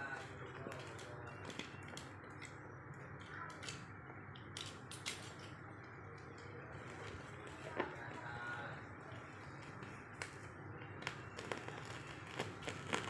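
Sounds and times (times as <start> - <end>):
plastic packaging crinkling: 11.0 - 13.0.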